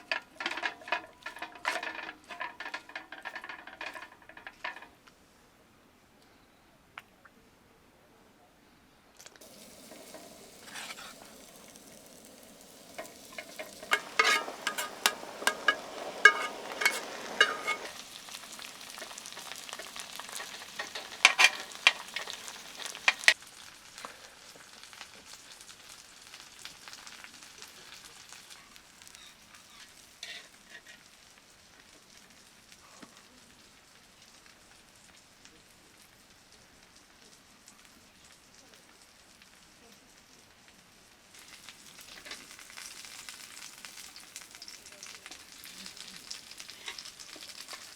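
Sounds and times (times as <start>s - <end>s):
food sizzling in a pan: 0.0s - 4.9s, 9.4s - 47.9s
utensil knocking against pan: 12.9s - 23.3s.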